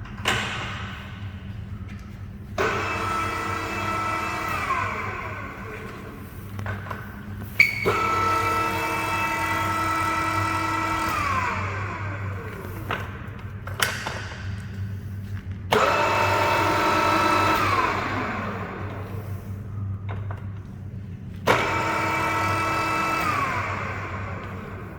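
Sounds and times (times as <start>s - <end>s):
steady low hum: 0.0s - 24.9s
drill gear drive whining: 2.6s - 13.0s, 15.7s - 19.4s, 21.4s - 24.9s.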